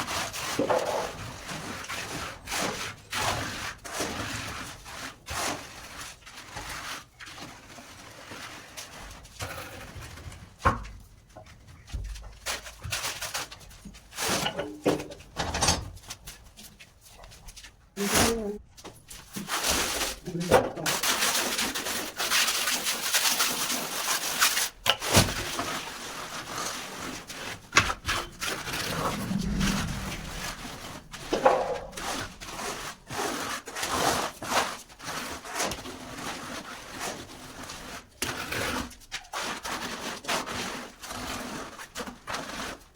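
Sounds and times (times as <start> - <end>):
hand tool scraping masonry: 0.0 - 10.6, 18.0 - 42.9
trowel scraping cement mortar: 19.3 - 29.6.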